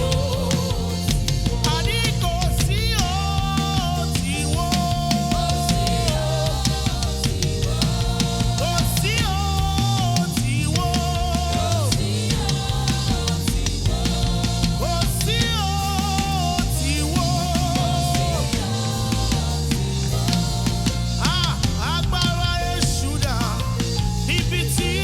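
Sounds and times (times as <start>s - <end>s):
bass line: 0.0s - 25.0s
drum kit steady beat: 0.0s - 25.0s.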